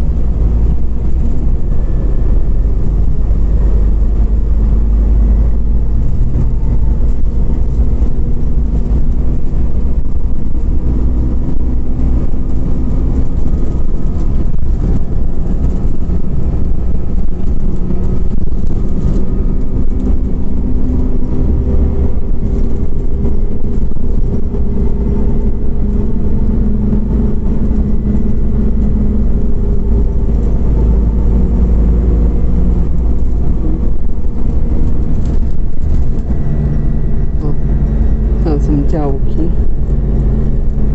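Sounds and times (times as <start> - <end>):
bus engine rumble: 0.0 - 40.9
road noise: 0.0 - 40.9.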